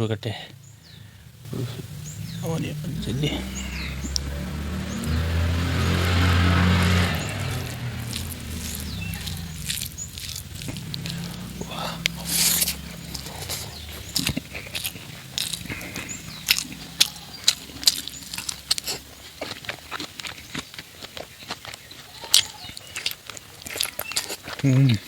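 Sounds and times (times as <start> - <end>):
person chewing food: 5.0 - 25.0
lip smacks: 5.8 - 25.0.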